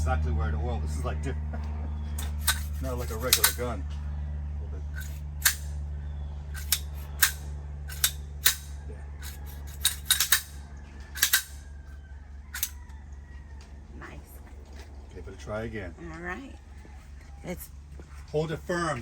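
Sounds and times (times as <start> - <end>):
steady low hum: 0.0 - 19.0
pistol metal clicks and clacks: 2.2 - 3.6, 5.0 - 5.7, 6.6 - 10.6, 11.2 - 11.6, 12.5 - 12.8.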